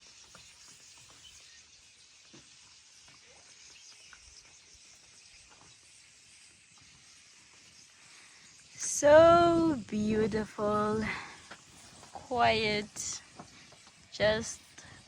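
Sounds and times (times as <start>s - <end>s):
faint steady hiss: 0.0s - 15.0s
faint bird chirps: 0.2s - 9.2s.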